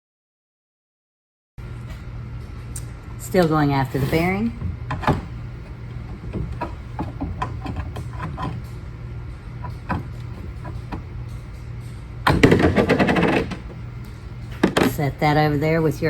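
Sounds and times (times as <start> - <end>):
steady low hum: 1.6 - 16.0
tools and parts clicking: 6.0 - 8.8, 9.6 - 15.0
dense rattle: 12.3 - 13.9.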